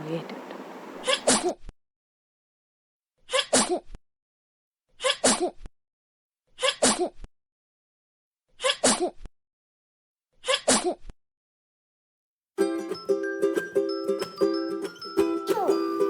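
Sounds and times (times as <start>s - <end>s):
person sneezing: 1.0s - 1.6s, 3.3s - 3.8s, 5.0s - 5.6s, 6.6s - 7.1s, 8.6s - 9.2s, 10.5s - 11.0s.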